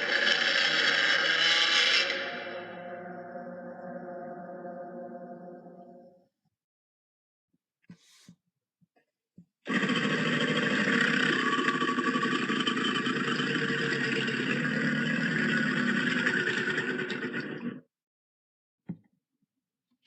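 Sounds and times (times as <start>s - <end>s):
harsh rasping sound: 0.0s - 3.2s.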